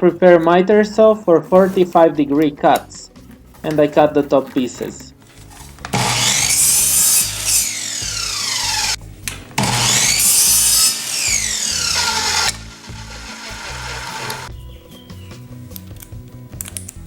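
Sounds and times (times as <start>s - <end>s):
handling sounds: 1.5s - 6.0s
miter saw cutting wood: 5.9s - 9.0s, 9.6s - 14.5s.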